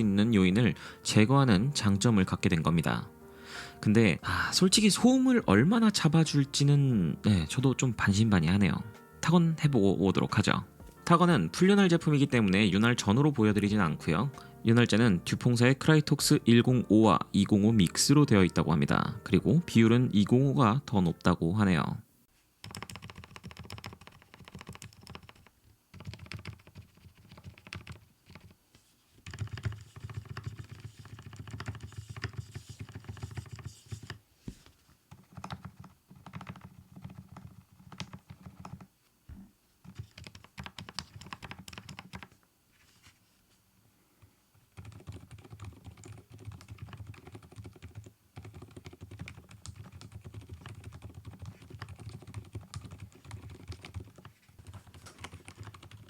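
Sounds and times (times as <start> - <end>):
soft keyboard typing: 22.6 - 28.6, 29.2 - 34.2, 35.1 - 38.9, 39.8 - 42.4, 44.6 - 56.0.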